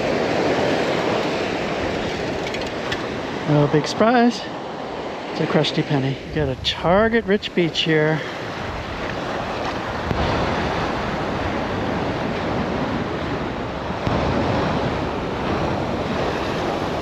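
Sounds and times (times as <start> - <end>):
ocean surf washing: 0.0 - 17.0
wind buffeting microphone: 4.6 - 17.0.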